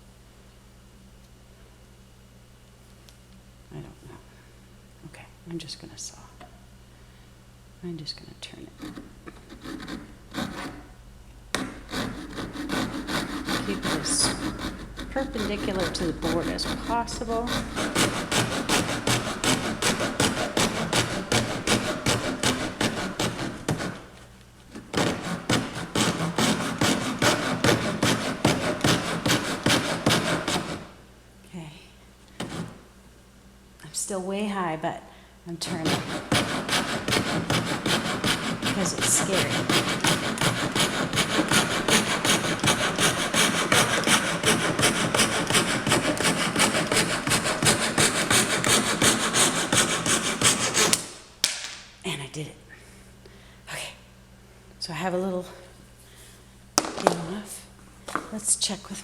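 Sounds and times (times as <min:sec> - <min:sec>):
saw cutting through wood: 0:08.8 - 0:10.9, 0:11.6 - 0:24.1, 0:25.0 - 0:31.0, 0:35.6 - 0:51.1.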